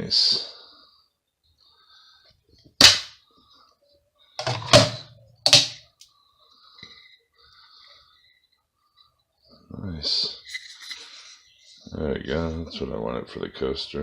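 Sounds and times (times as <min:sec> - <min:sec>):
hard objects clacking together: 0:04.4 - 0:05.8.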